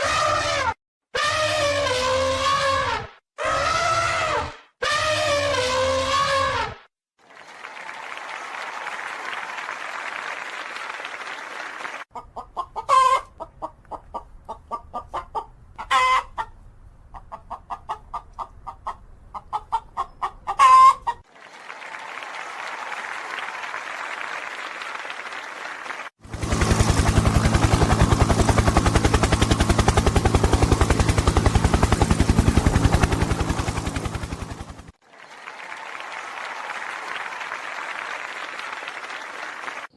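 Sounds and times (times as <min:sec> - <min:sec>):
chicken squawks: 0:00.0 - 0:06.8, 0:12.2 - 0:21.3
chickens clucking: 0:12.2 - 0:21.2.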